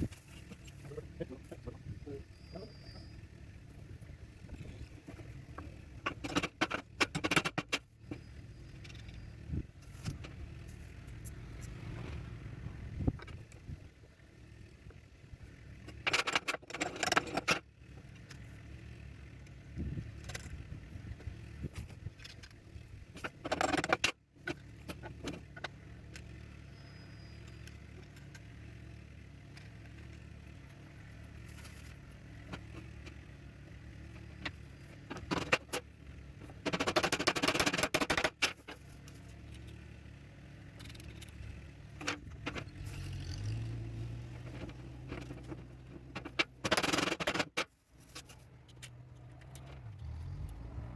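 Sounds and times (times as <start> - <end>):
wooden clatter: 34.2 - 39.7, 44.4 - 49.6.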